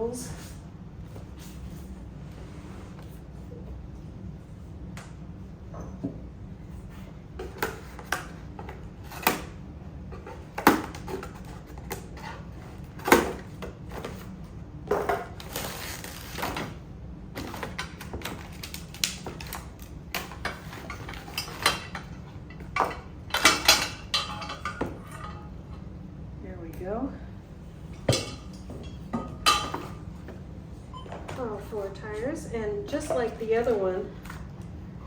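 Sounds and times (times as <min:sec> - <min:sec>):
knocks and clatter of parts: 0:20.2 - 0:25.5.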